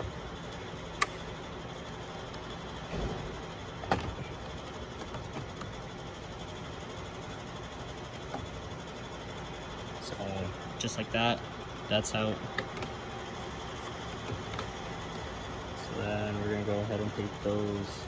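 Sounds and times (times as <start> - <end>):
steady low hum: 0.0 - 18.0
plastic trim clicking: 0.9 - 2.5, 12.4 - 15.2.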